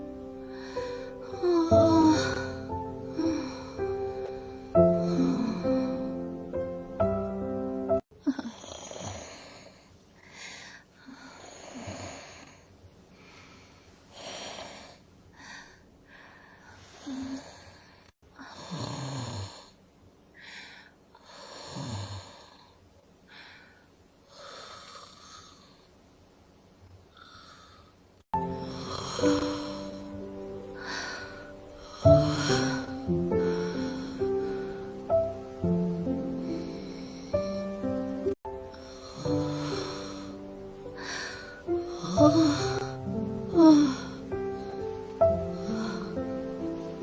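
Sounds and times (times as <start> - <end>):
music: 0.0 - 8.0, 28.4 - 47.0
person snoring: 0.5 - 6.2, 8.3 - 9.8, 18.4 - 19.7, 21.3 - 22.7, 27.2 - 40.4, 41.0 - 47.0.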